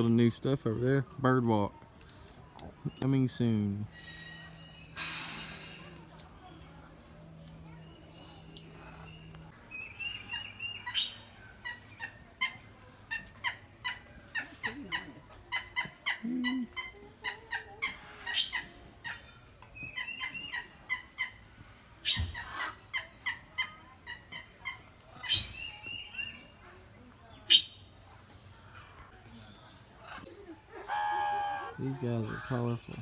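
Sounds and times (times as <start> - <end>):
parrots warbling chatter: 9.9 - 26.4, 28.7 - 32.9
parrots squawking: 10.0 - 25.8, 30.0 - 32.9.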